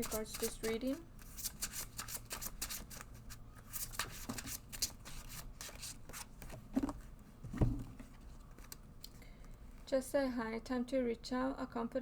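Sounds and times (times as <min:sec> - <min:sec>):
cards shuffled by hand: 0:00.0 - 0:06.6.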